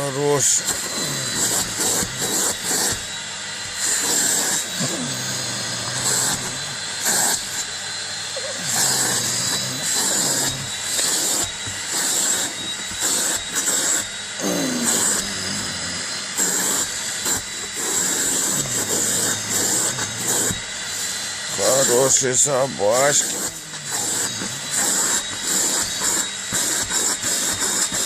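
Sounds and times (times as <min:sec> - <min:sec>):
vacuum cleaner whine: 0:00.0 - 0:28.0.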